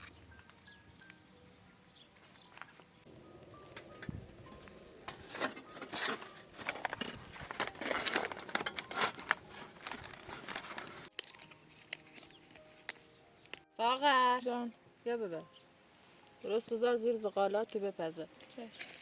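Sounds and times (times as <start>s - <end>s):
wrapping crinkling: 3.2s - 13.7s, 18.4s - 19.0s.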